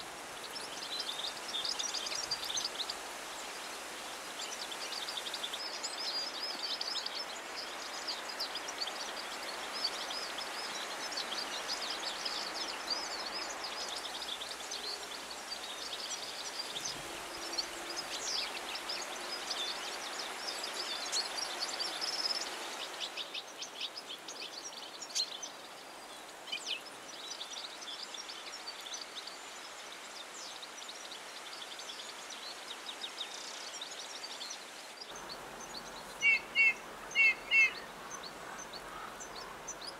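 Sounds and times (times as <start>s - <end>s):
steady outdoor hiss: 0.0s - 39.9s.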